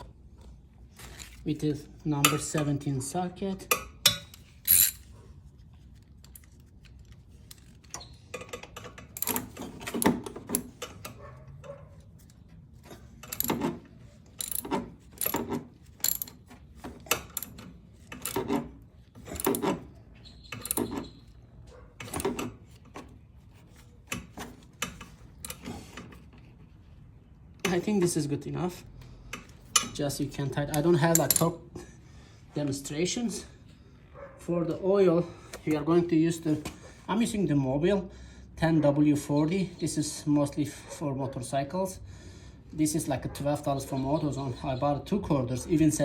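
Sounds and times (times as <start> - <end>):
ratchet wrench clicking: 14.4 - 16.4.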